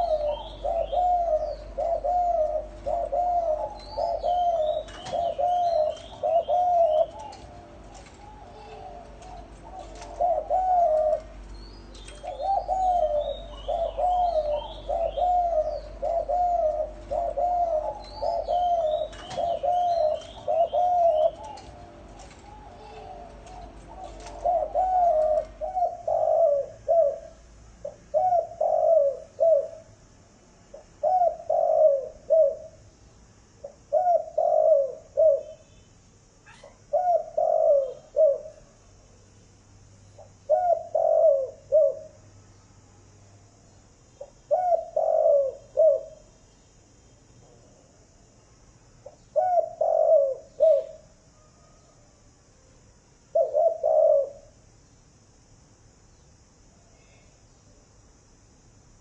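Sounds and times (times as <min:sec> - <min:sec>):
small birds chirping: 0:00.0 - 0:29.9, 0:30.7 - 0:52.0
doves cooing: 0:00.0 - 0:30.0, 0:30.7 - 0:32.8, 0:33.6 - 0:35.6, 0:36.4 - 0:38.8, 0:40.2 - 0:42.2, 0:44.2 - 0:46.4, 0:49.0 - 0:52.0, 0:53.3 - 0:54.6
faint hiss: 0:00.0 - 0:59.0.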